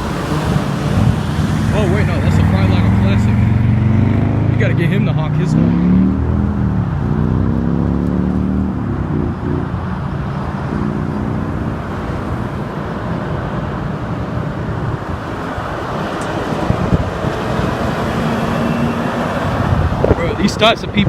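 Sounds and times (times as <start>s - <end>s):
wind on microphone: 0.0s - 4.6s, 8.6s - 21.0s
truck diesel engine droning: 0.0s - 7.4s, 15.3s - 21.0s
tyre and road rush: 0.0s - 21.0s.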